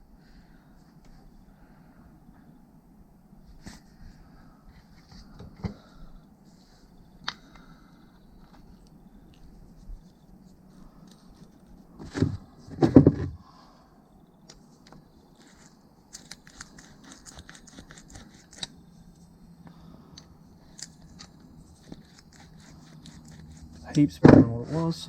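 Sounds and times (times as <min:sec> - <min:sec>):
knocks: 0:24.2 - 0:24.6.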